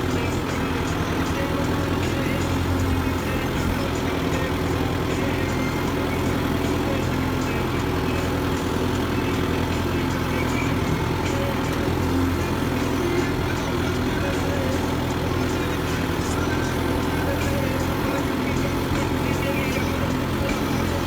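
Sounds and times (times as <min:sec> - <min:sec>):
tractor diesel engine running: 0:00.0 - 0:21.0.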